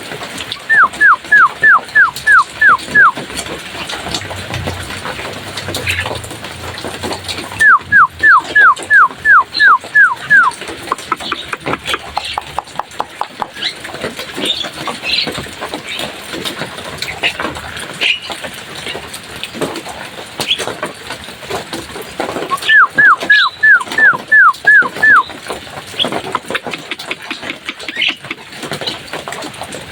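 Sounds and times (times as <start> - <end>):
bird clicking chatter: 0.7 - 3.2, 7.1 - 15.2, 22.5 - 29.0
bird whistles sliding downward: 0.7 - 3.2, 7.6 - 10.5, 22.5 - 25.3
short squeaky bird notes: 22.5 - 25.3.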